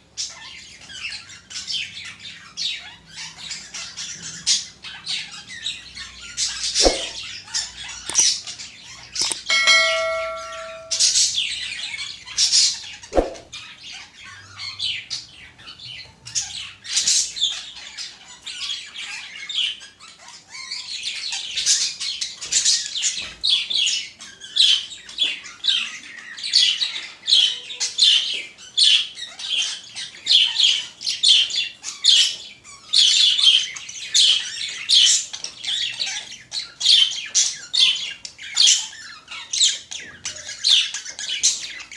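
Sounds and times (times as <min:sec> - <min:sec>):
budgerigars chirping and squawking: 0:00.0 - 0:41.9
short multi-pitched ringing tone: 0:09.3 - 0:11.2.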